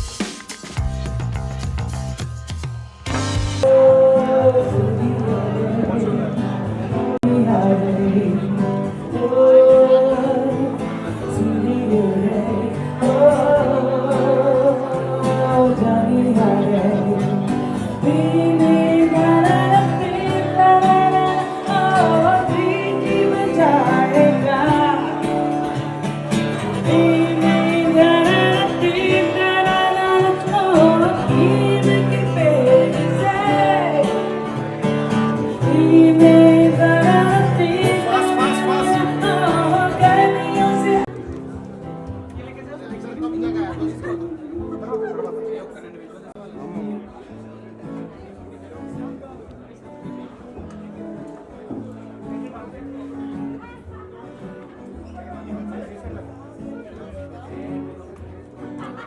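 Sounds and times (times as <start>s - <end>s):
guitar: 0.0s - 59.0s
person singing: 3.2s - 41.3s.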